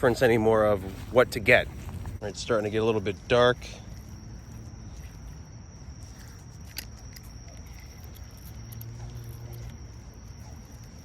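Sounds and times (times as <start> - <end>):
insects trilling: 0.0 - 11.0
low outdoor rumble: 0.0 - 11.0.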